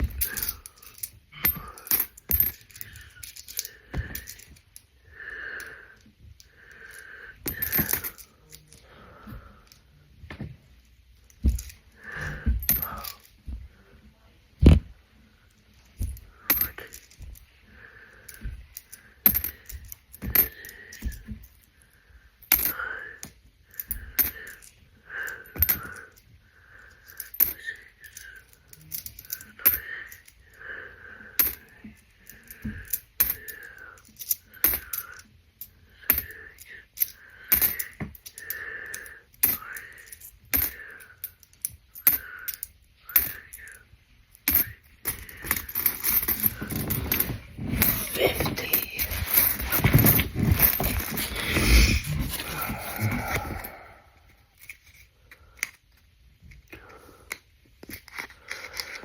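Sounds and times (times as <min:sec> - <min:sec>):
coins clicking and sliding: 0:27.0 - 0:30.4, 0:32.3 - 0:52.1.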